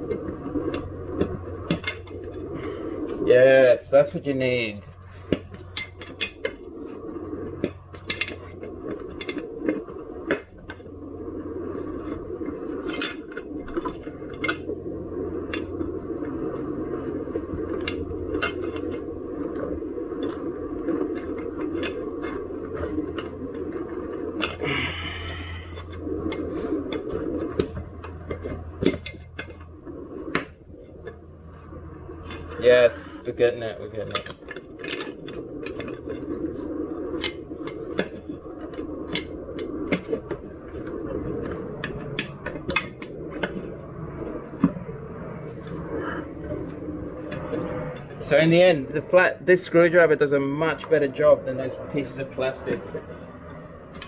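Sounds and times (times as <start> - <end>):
steady background hum: 0.0 - 54.0
metallic clicks and scrapes on rim: 12.0 - 14.8, 17.3 - 24.6.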